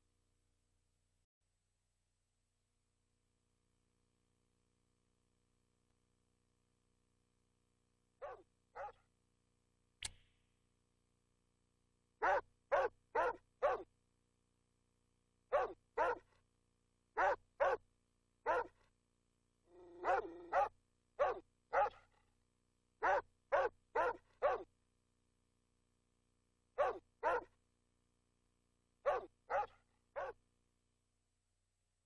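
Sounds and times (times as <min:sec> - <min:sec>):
dog barking: 0:08.2 - 0:09.0, 0:12.2 - 0:13.9, 0:15.5 - 0:16.3, 0:17.2 - 0:17.8, 0:18.4 - 0:18.8, 0:19.7 - 0:22.1, 0:23.0 - 0:24.7, 0:26.8 - 0:27.5, 0:29.0 - 0:30.4.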